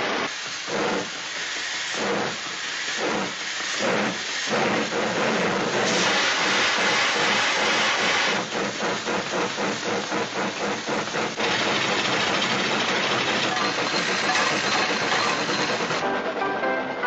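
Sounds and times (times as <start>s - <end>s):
steady hiss of steam: 0.0s - 16.0s
steam locomotive chuffing: 0.0s - 16.3s.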